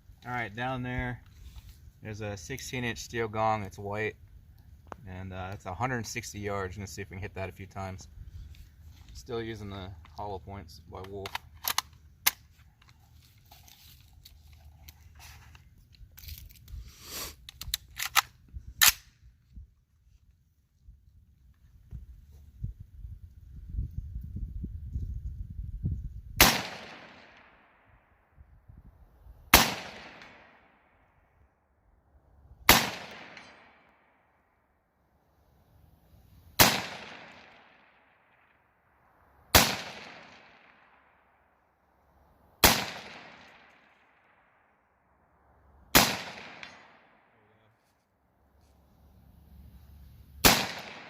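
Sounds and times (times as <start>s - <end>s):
rifle shots with echo: 26.4s - 27.9s, 29.5s - 31.0s, 32.6s - 34.2s, 36.6s - 38.6s, 39.5s - 41.3s, 42.6s - 44.8s, 45.9s - 47.4s, 50.4s - 51.0s.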